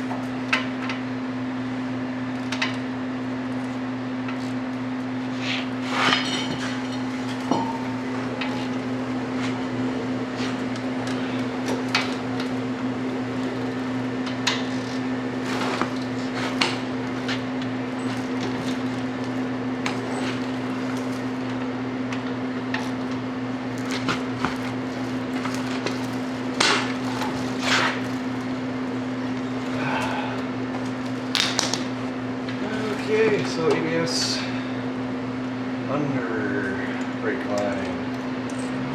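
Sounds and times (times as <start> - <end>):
heater fan humming: 0.0 - 38.9
hand tools knocking and clinking: 31.4 - 31.9.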